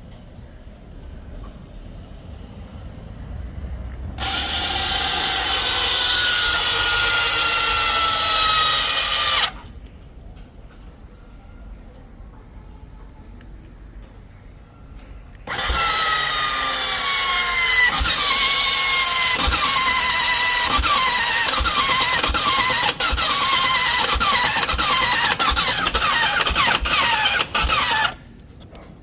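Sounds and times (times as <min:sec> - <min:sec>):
motorcycle starter cranking: 0:15.4 - 0:28.4.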